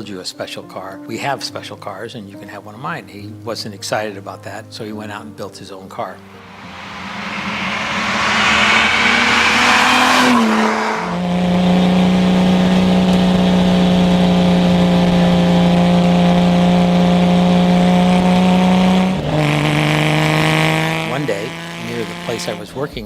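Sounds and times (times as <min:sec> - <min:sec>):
sports car engine revving: 0:06.4 - 0:22.5.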